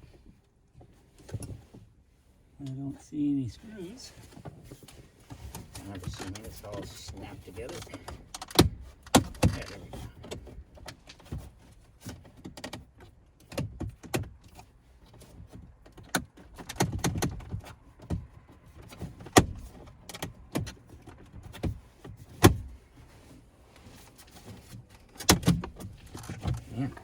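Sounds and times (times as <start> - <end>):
plastic trim clicks and knocks: 7.8 - 11.1.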